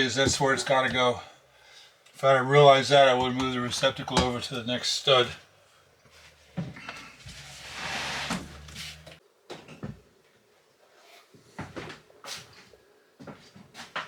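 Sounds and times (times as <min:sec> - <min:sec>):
hardware knocking against wall: 0:00.1 - 0:01.1.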